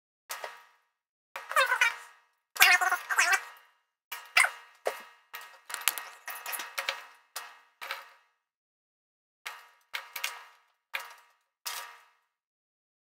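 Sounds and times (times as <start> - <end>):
plastic bricks clattering and clicking: 5.6 - 7.0.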